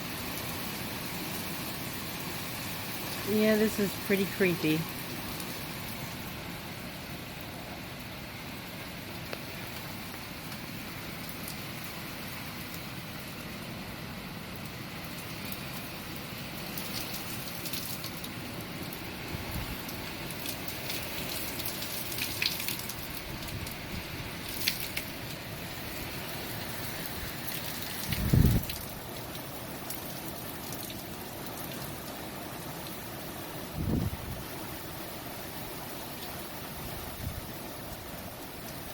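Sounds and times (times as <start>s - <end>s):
heavy rain hissing: 0.0s - 38.9s
rain drops spattering: 0.0s - 38.9s
wind: 0.0s - 38.9s.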